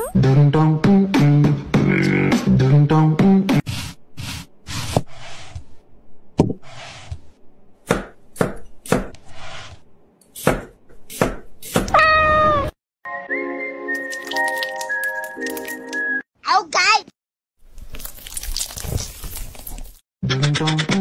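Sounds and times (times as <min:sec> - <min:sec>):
knife chopping on cutting board: 0:07.8 - 0:09.2, 0:10.4 - 0:11.9.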